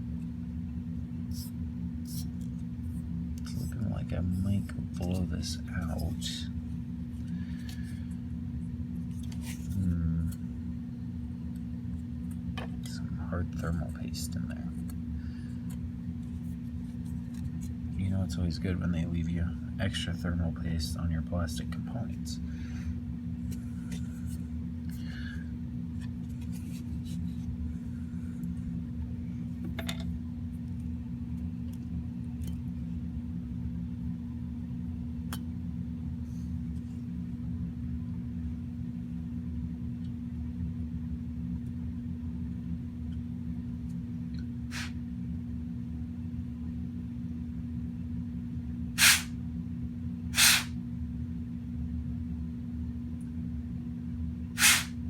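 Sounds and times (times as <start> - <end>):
low background hum: 0.0 - 55.0
compressed air blasts: 44.7 - 45.0, 49.0 - 49.4, 50.4 - 50.8, 54.6 - 55.0.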